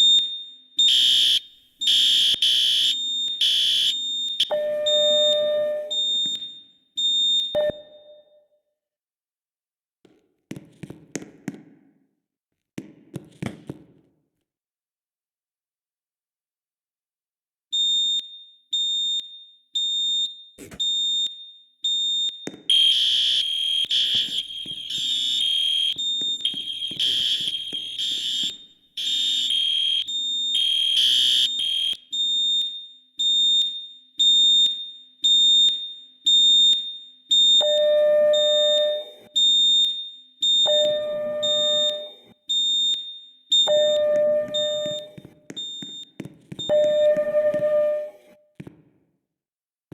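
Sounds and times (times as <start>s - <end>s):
pulsing electronic fire alarm: 0.0s - 8.6s, 17.8s - 48.4s
long low alarm tones: 0.8s - 6.4s, 22.7s - 32.7s, 37.3s - 42.9s, 43.5s - 45.9s, 46.7s - 48.2s
harsh pulsing alarm: 0.8s - 8.2s, 22.0s - 48.3s.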